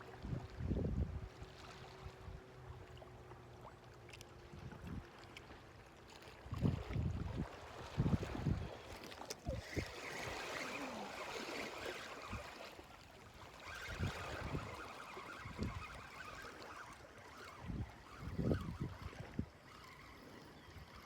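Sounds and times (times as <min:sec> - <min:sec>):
fishing reel whirring: 0:06.6 - 0:21.0.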